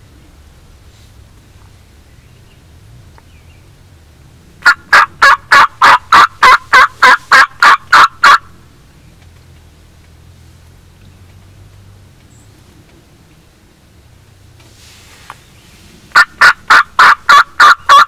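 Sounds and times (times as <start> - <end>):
turkey call notes: 4.6 - 8.5, 16.1 - 18.0.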